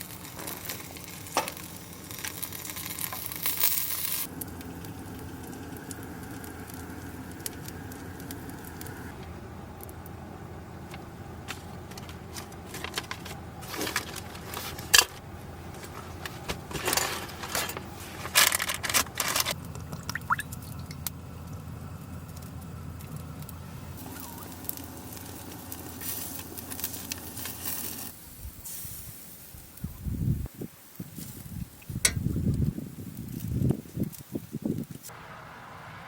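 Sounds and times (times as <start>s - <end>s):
steady low hum: 0.0s - 28.7s
objects being handled: 11.4s - 19.6s.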